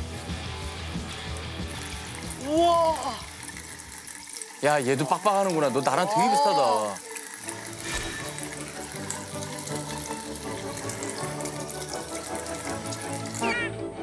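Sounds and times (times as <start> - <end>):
background music with bass: 0.0 - 3.0
tap water running into sink: 0.0 - 13.8.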